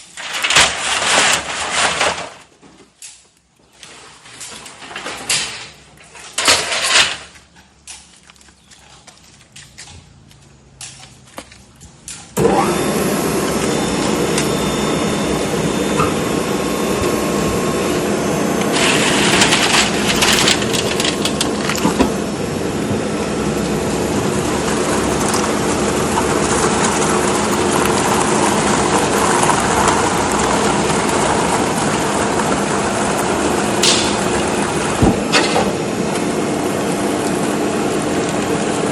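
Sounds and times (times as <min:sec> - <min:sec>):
can baler machine running: 0:00.0 - 0:02.4, 0:12.4 - 0:38.9.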